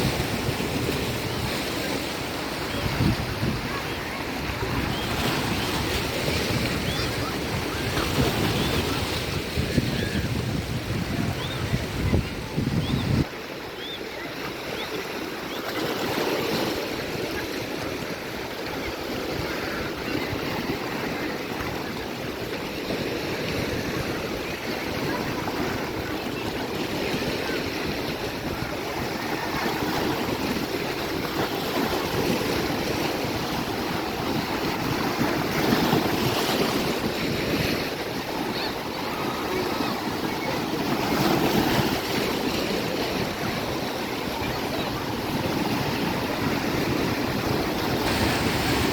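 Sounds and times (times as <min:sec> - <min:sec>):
wind buffeting microphone: 0:00.0 - 0:13.3
sea surf breaking on shore: 0:00.0 - 0:48.9.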